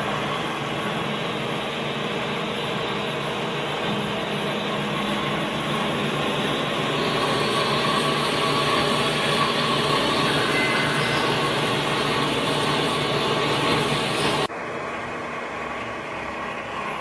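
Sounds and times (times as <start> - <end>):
band saw running: 0.0 - 17.0
faint held tone: 10.1 - 12.4.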